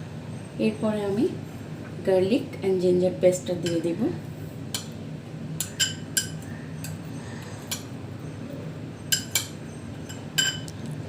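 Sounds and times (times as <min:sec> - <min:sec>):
low steady hum: 0:00.0 - 0:11.0
spoon clinking against bowl: 0:05.6 - 0:07.0, 0:09.1 - 0:10.7.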